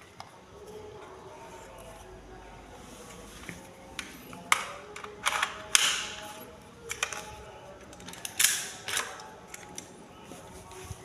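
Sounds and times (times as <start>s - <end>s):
toy pistol snaps and clacks: 4.0s - 6.2s, 7.9s - 9.9s.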